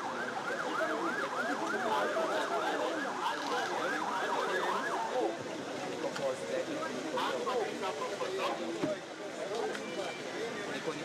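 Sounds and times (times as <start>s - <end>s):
sirens yelping: 0.0s - 5.4s.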